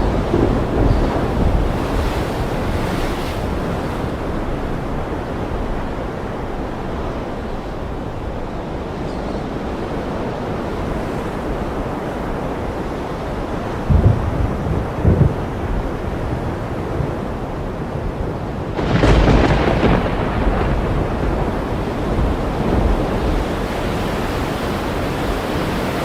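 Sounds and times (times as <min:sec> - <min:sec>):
thunder rumble: 0:00.0 - 0:05.8, 0:13.8 - 0:17.3, 0:18.1 - 0:25.9
ocean surf: 0:00.0 - 0:26.0
sudden thunder clap: 0:18.8 - 0:23.0.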